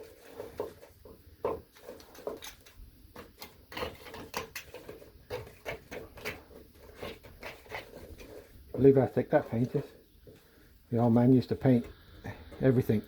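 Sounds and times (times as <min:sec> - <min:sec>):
blade scraping paint off metal: 0:00.0 - 0:10.0.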